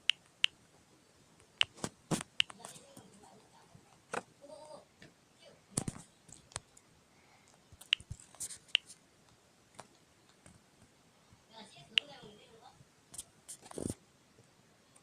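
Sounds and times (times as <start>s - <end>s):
fingertips tapping touchscreen: 1.6s - 2.6s, 7.8s - 8.9s.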